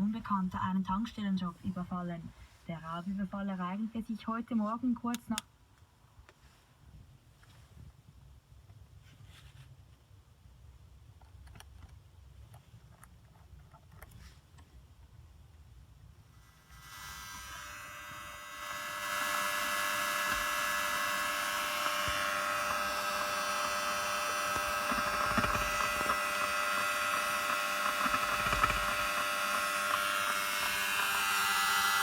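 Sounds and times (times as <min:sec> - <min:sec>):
electrical buzzing whine: 0:16.6 - 0:32.0.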